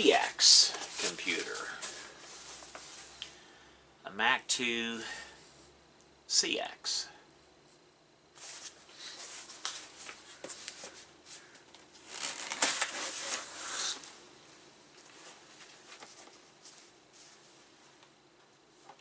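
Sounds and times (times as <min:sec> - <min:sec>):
plastic bag rustling and crinkling: 0:08.4 - 0:14.0.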